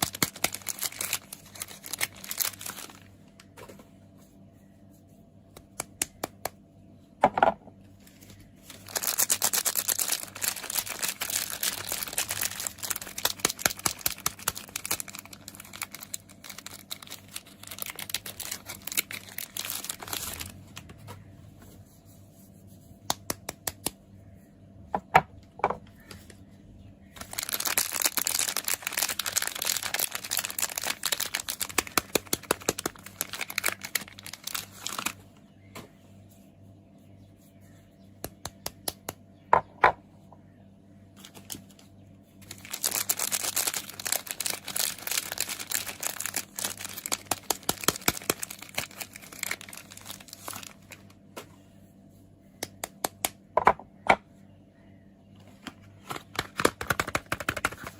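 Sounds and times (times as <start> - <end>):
wrapper crinkling and tearing: 0.0 - 3.4, 8.0 - 21.0, 27.2 - 35.2, 41.2 - 41.8, 42.4 - 51.2.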